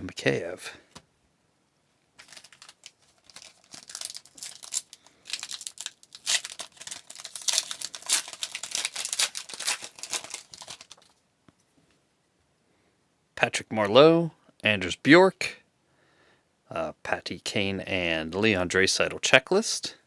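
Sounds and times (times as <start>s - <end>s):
wrapper crinkling and tearing: 2.2s - 11.2s.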